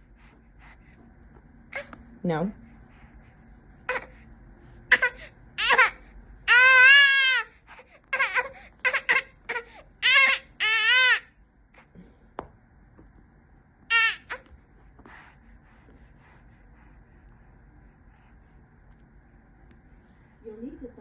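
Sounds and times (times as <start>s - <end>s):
baby crying: 4.9s - 11.3s, 13.9s - 14.4s.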